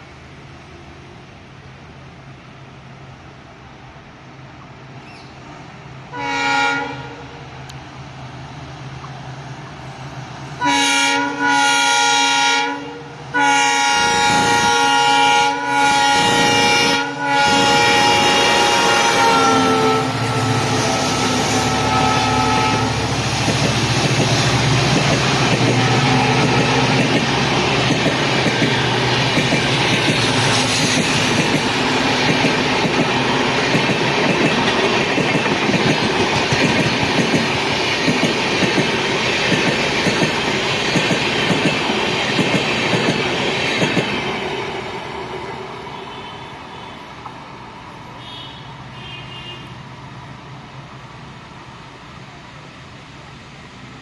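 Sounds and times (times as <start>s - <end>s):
train horn: 6.1s - 7.5s, 10.6s - 23.2s, 25.8s - 27.0s, 45.8s - 47.1s, 48.2s - 49.8s
train wheels clattering on rails: 22.6s - 45.0s.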